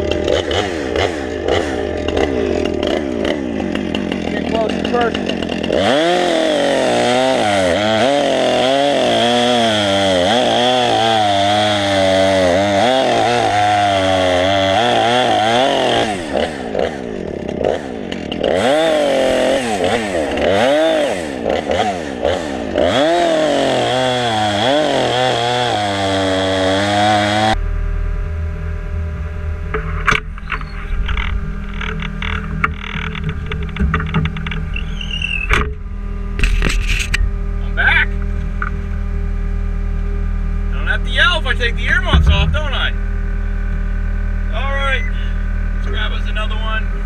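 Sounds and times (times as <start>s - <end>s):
chainsaw cutting logs: 0.0s - 27.6s, 29.8s - 39.0s
low engine hum: 27.3s - 47.0s.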